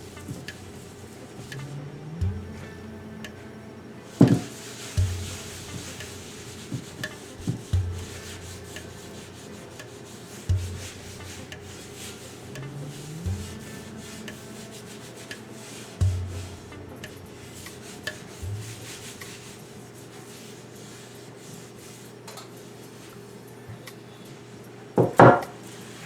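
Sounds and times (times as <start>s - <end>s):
soft background music with bass: 0.0s - 21.0s
hand rubbing skillet: 0.0s - 23.2s, 25.0s - 26.0s
skillet knocks: 4.2s - 19.4s, 25.0s - 25.6s.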